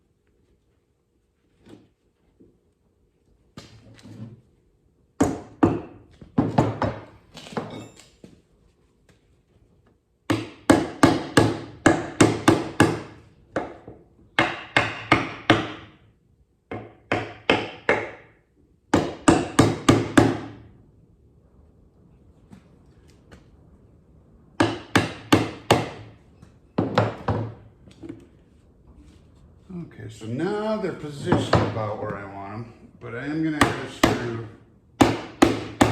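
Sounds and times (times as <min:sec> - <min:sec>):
hammer driving nails into wood: 0:35.0 - 0:35.9.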